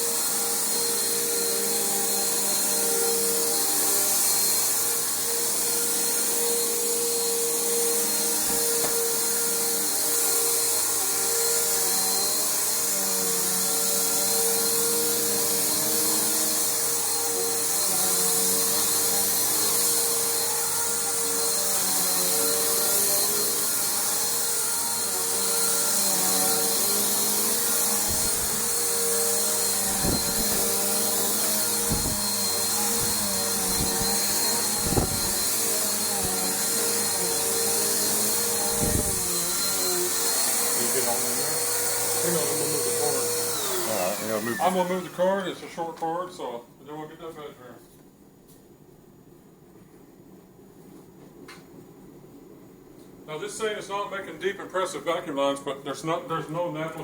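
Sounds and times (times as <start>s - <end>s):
vacuum cleaner running on carpet: 0.0s - 45.4s.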